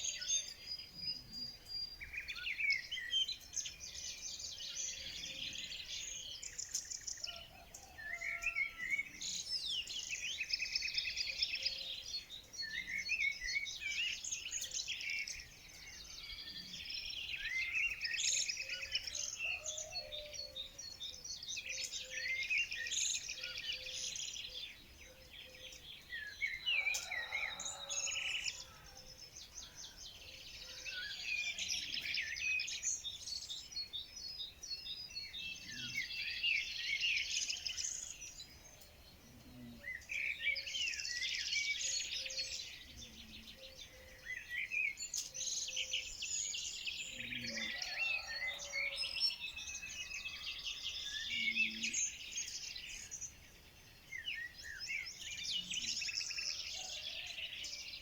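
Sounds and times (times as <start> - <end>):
songbirds chirping and trilling: 0.0 - 58.0.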